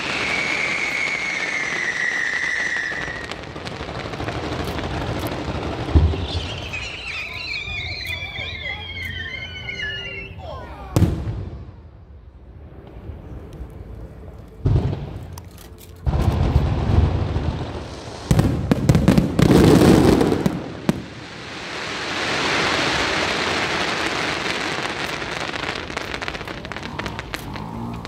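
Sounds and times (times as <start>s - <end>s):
dense firework crackle: 0.0s - 10.3s, 16.0s - 28.0s.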